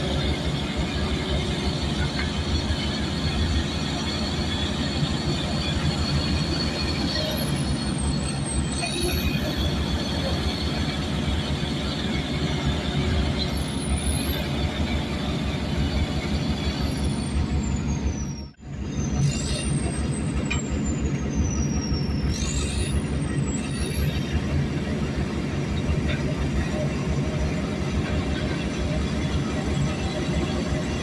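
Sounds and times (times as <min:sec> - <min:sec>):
heavy diesel machinery running: 0:00.0 - 0:31.0.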